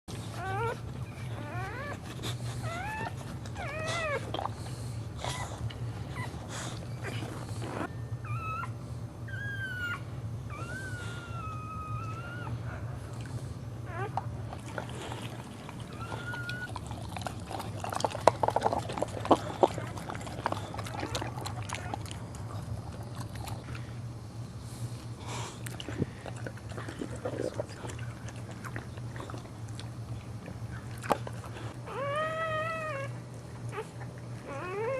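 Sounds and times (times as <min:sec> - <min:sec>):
dog whining: 0:00.1 - 0:13.0, 0:13.8 - 0:23.8, 0:30.7 - 0:34.9
steady low hum: 0:00.1 - 0:34.9.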